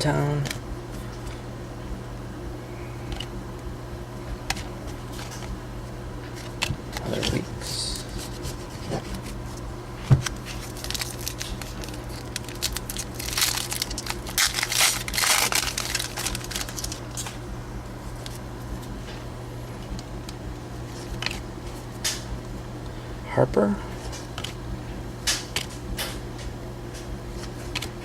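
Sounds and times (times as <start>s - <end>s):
crinkling and rustling: 6.3s - 17.4s
trading cards being flipped: 6.3s - 17.4s, 20.9s - 22.2s, 24.1s - 24.6s.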